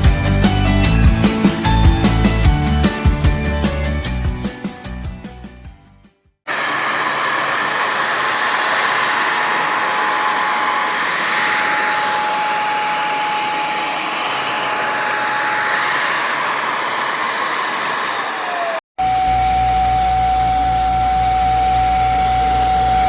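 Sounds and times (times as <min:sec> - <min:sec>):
vacuum cleaner running: 0:06.5 - 0:23.0.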